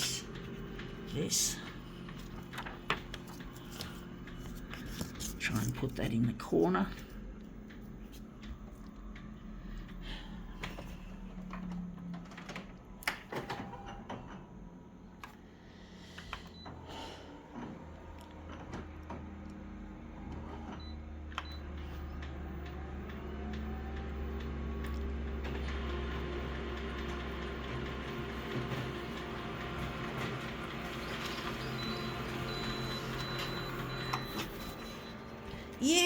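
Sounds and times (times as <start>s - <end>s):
photocopier humming: 0.0s - 36.0s
paper handling: 2.2s - 6.0s.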